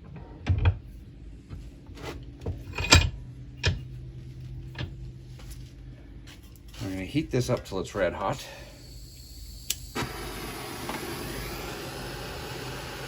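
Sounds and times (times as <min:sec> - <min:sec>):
faint steady hum: 0:00.0 - 0:11.9
metal parts knocking in a vise: 0:02.4 - 0:03.9.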